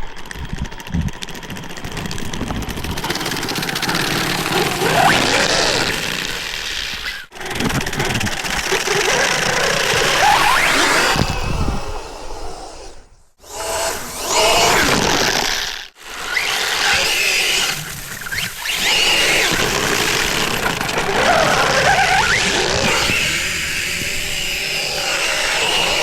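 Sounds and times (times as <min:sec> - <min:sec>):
electric motor whining: 0:00.0 - 0:12.4, 0:13.4 - 0:26.0
tires rattling and scraping on pavement: 0:17.7 - 0:23.6.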